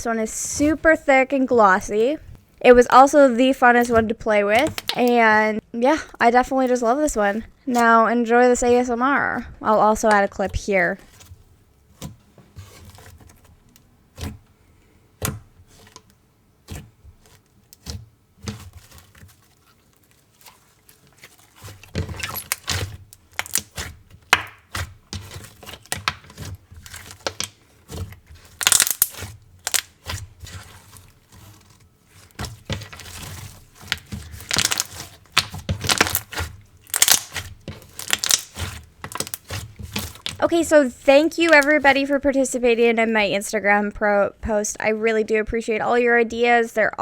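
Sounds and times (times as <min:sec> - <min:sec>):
slime squelching and crackling: 0:00.0 - 0:14.4, 0:16.6 - 0:42.6.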